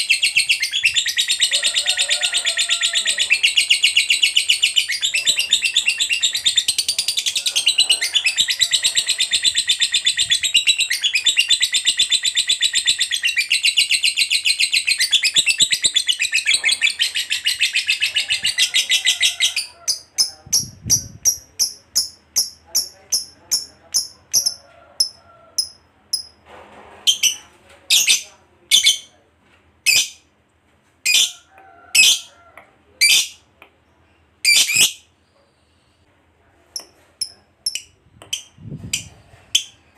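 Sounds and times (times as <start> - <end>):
lovebird chattering trill: 0.0 - 1.8, 2.4 - 26.3, 34.4 - 35.0, 37.2 - 39.7.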